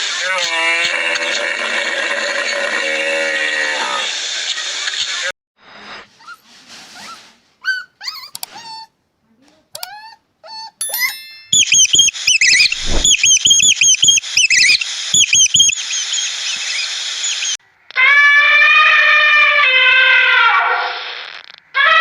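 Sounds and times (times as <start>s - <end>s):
animal squeaks and chirps: 7.0s - 8.9s, 9.8s - 17.6s.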